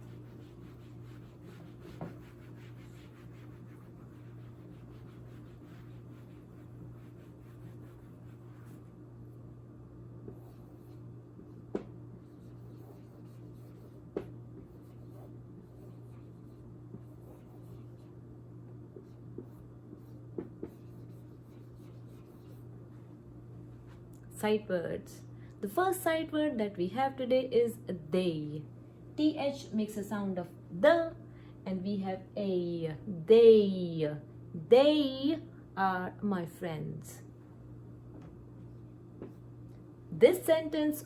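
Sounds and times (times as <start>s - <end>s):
handwriting scratching: 0.0s - 8.9s, 12.2s - 18.2s, 19.0s - 22.7s
low electrical hum: 0.0s - 41.0s.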